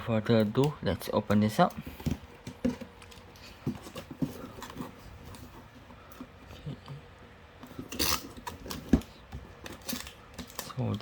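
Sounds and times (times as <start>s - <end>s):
hands tapping and scratching cardboard: 1.8s - 6.4s.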